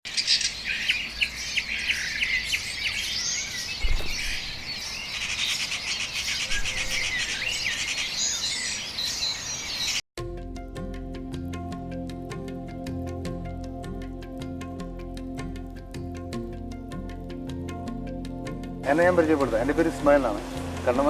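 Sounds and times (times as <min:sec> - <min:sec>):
birds chirping and singing: 0:00.1 - 0:10.0
background music: 0:10.2 - 0:21.0.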